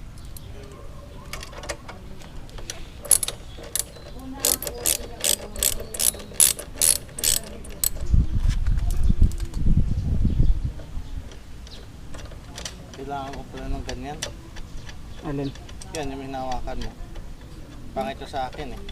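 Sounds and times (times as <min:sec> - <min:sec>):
hand tools clicking on metal: 0:01.3 - 0:08.1, 0:11.3 - 0:18.9.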